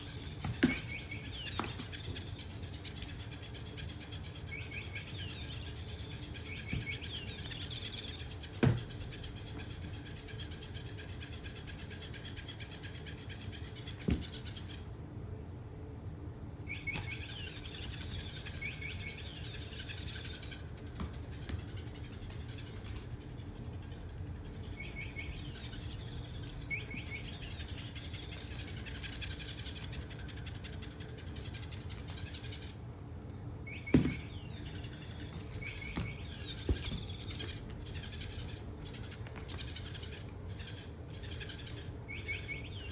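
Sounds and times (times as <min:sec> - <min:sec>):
high bird-like chirps: 0:00.0 - 0:08.5, 0:16.7 - 0:20.6, 0:24.5 - 0:28.8, 0:33.6 - 0:38.5, 0:39.2 - 0:42.9
low steady hum: 0:00.0 - 0:42.9.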